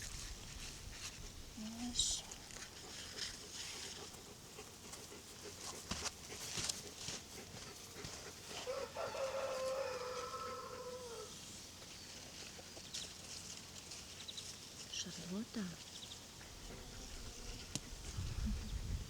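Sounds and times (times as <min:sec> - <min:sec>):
rooster crowing: 0:08.6 - 0:11.4.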